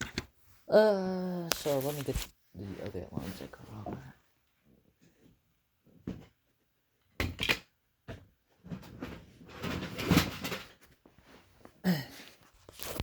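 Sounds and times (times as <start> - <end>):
rustling: 1.4 - 3.9
handling knocks and clunks: 7.2 - 10.8.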